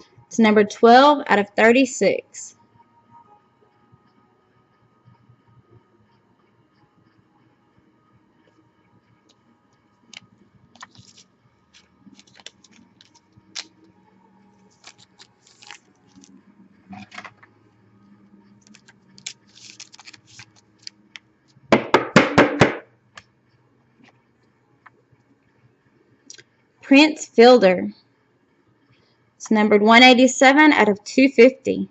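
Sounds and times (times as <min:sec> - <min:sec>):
cards and plastic sleeves rustling: 0:10.8 - 0:13.8, 0:14.7 - 0:16.4, 0:18.6 - 0:21.0
fast clatter of knocks: 0:21.8 - 0:22.8.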